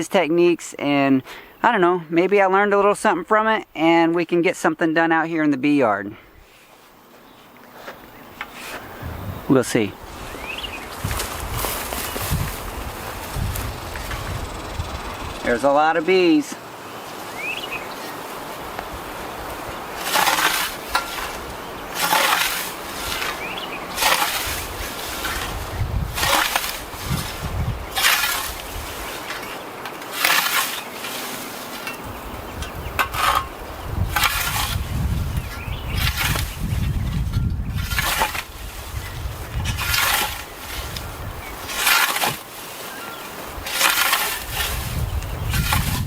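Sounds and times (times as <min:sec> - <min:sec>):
scythe swishing through grass: 0:10.2 - 0:13.7, 0:18.0 - 0:32.1, 0:36.0 - 0:46.0.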